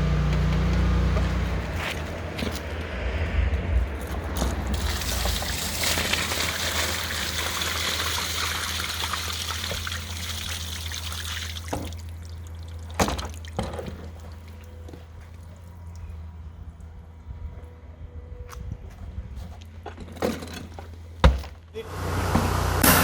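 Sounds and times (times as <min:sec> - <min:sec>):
low hum: 0:00.0 - 0:05.6
water rushing and trickling: 0:04.0 - 0:16.0.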